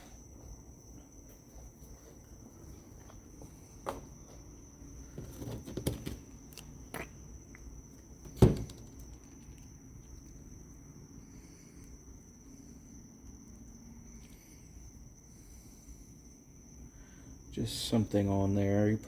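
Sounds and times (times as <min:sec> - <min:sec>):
thin steady high tone: 0:09.0 - 0:19.0.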